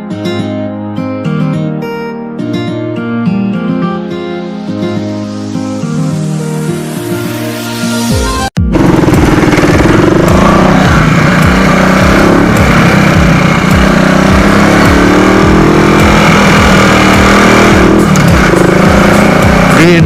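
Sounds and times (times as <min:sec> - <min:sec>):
motorcycle exhaust running: 0:08.6 - 0:20.0.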